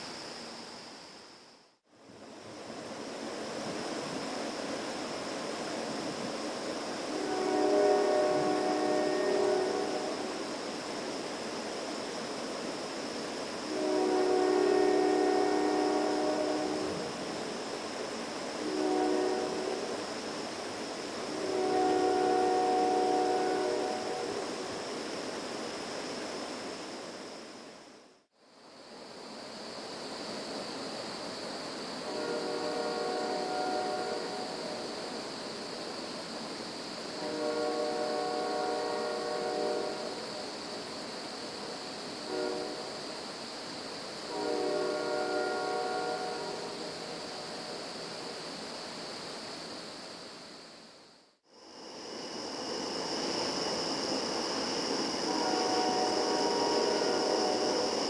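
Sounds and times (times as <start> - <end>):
rushing hissing background noise: 0.0 - 58.0
distant train rumbling: 2.1 - 27.9, 30.2 - 48.7, 51.5 - 58.0
locomotive air horn: 7.1 - 10.1, 13.7 - 17.0, 18.6 - 19.9, 21.3 - 24.4, 32.1 - 34.6, 37.2 - 40.1, 42.3 - 42.8, 44.3 - 46.7, 55.3 - 57.4.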